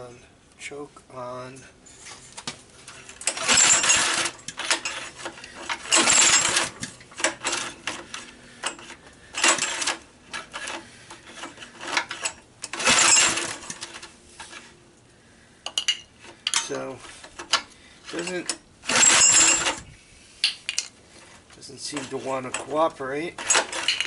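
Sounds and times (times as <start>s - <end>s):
generator engine cranking: 2.9s - 14.1s, 16.3s - 19.9s, 23.4s - 24.0s
recoil rope pulls: 2.9s - 14.7s, 16.7s - 19.9s, 23.4s - 24.0s.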